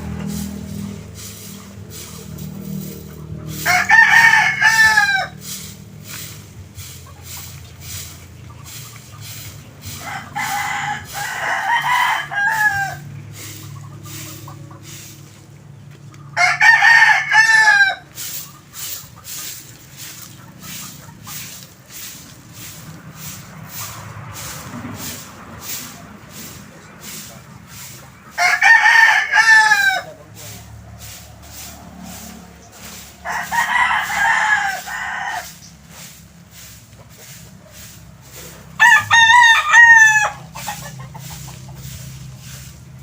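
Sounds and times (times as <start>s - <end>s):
rooster crowing: 3.5s - 5.4s, 10.0s - 13.2s, 16.4s - 18.1s, 28.3s - 30.2s, 33.2s - 35.6s, 38.8s - 40.8s.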